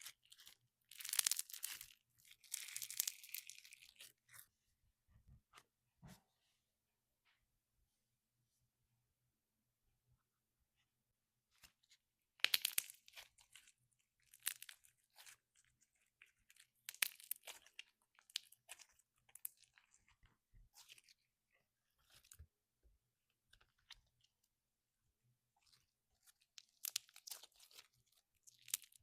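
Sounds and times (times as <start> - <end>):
slime crackling and popping: 0.0 - 4.2, 12.4 - 21.2, 25.6 - 29.0.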